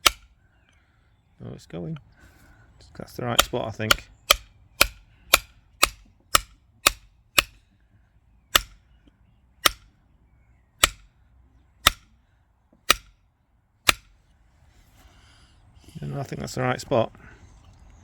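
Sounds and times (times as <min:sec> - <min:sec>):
hammer striking metal chisel: 0:00.0 - 0:00.3, 0:03.3 - 0:07.6, 0:08.5 - 0:08.8, 0:09.6 - 0:09.9, 0:10.8 - 0:11.1, 0:11.8 - 0:12.1, 0:12.9 - 0:13.2, 0:13.9 - 0:14.1.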